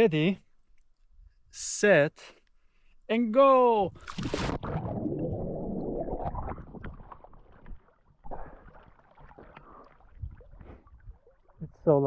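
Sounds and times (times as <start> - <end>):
sea water splashing: 4.0 - 11.6.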